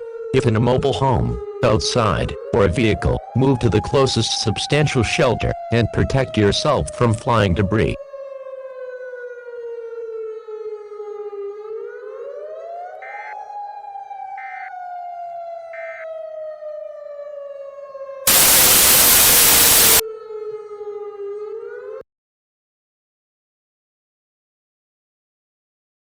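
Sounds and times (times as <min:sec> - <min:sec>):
tornado siren wailing: 0:00.0 - 0:22.0
loud static burst: 0:18.3 - 0:20.0.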